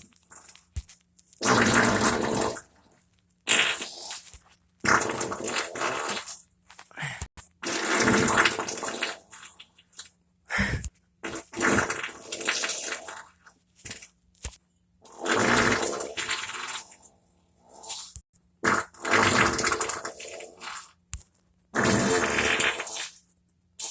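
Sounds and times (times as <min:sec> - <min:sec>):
person farting: 0:01.4 - 0:02.7, 0:03.4 - 0:06.4, 0:07.5 - 0:09.2, 0:10.5 - 0:13.4, 0:15.1 - 0:16.9, 0:18.6 - 0:21.0, 0:21.7 - 0:23.2.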